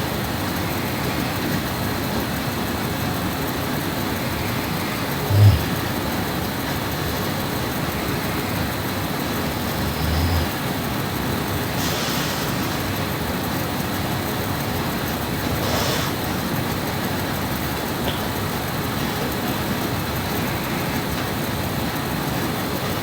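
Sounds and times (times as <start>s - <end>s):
background hiss: 0.1s - 19.8s
breathy exhales: 4.5s - 7.4s, 9.3s - 10.8s, 11.6s - 13.1s, 15.4s - 16.3s
woman snoring: 5.2s - 6.1s, 9.4s - 10.8s.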